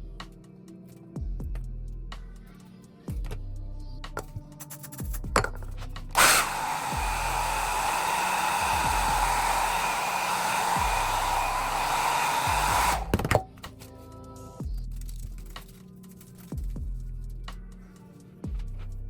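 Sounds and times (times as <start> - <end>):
background music: 0.0 - 19.0
blow dryer blowing: 6.2 - 13.4.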